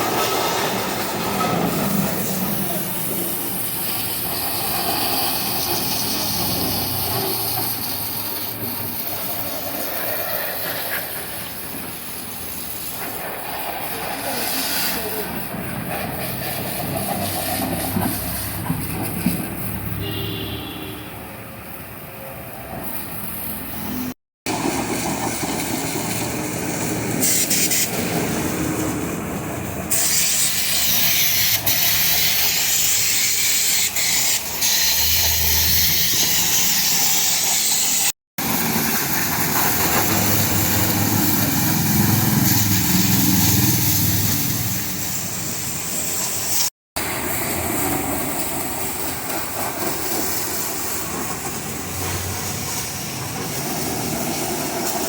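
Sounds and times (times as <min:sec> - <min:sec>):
high-pressure water jet spraying: 0:00.0 - 0:55.0.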